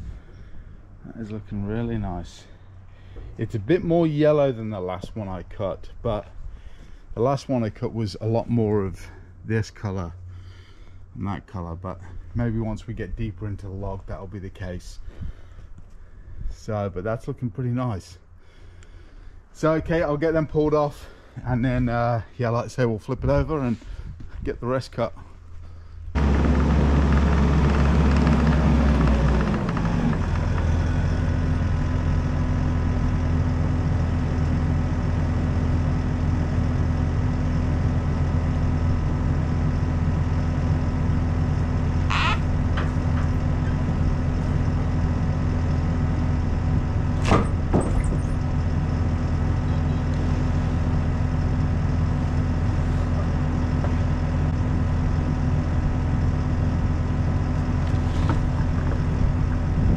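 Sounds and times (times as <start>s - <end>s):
machine engine running: 26.2s - 59.9s.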